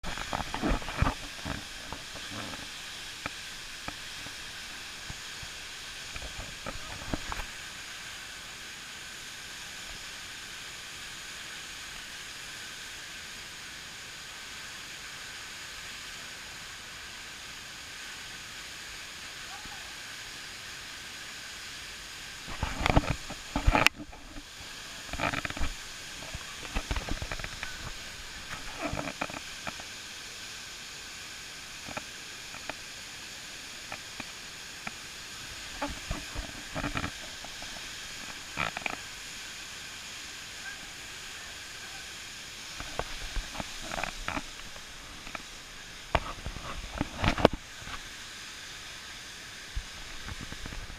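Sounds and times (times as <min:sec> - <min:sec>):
waterfall rushing: 0:00.0 - 0:50.9.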